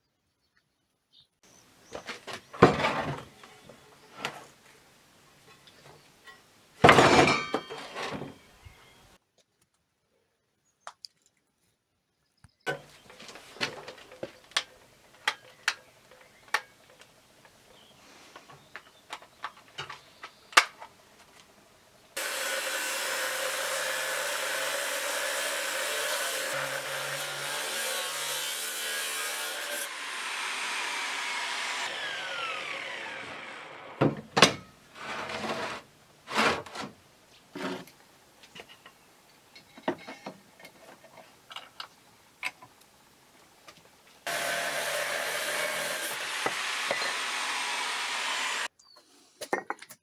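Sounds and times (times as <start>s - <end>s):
loud scraping: 34.9s - 36.9s.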